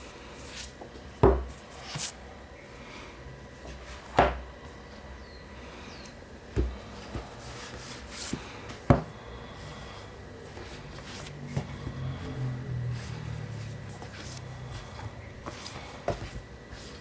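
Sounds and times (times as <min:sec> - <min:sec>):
books knocking on hard surface: 0:08.9 - 0:09.1.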